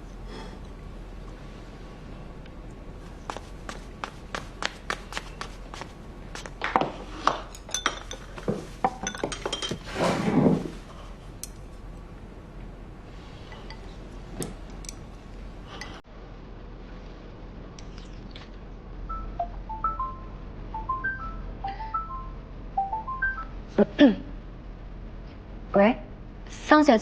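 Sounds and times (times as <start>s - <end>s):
dishes and cutlery clinking: 6.8s - 10.7s
tableware clattering: 6.8s - 10.8s.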